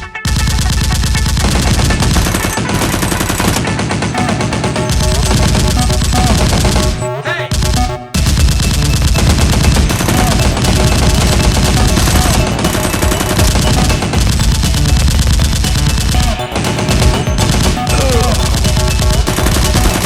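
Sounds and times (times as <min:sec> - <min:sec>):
background music: 0:00.0 - 0:20.0
machine-gun fire: 0:00.3 - 0:20.0.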